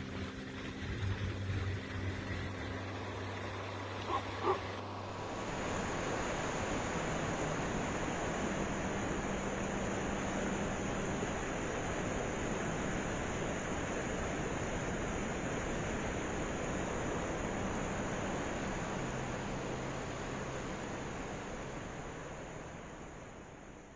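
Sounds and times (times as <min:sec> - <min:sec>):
steady rushing noise: 0:00.0 - 0:15.8
faint low hum: 0:00.0 - 0:23.9.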